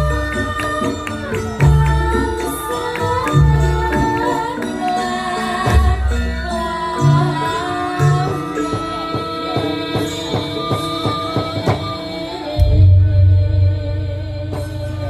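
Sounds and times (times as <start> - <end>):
ringing metallophone tones: 0.0 - 13.8
drum strokes: 8.1 - 15.0.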